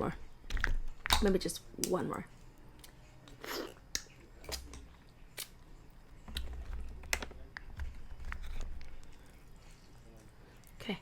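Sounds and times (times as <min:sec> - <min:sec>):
eating clicks and smacks: 0:02.8 - 0:05.6.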